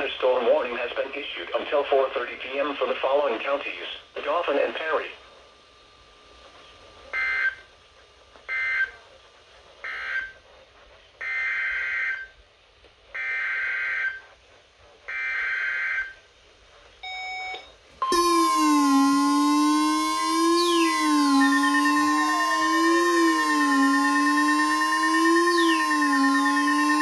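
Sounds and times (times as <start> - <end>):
buzzy digital data bursts: 18.0 - 27.0
loud steady alert tone: 18.0 - 27.0
siren-like sliding tones: 18.0 - 27.0.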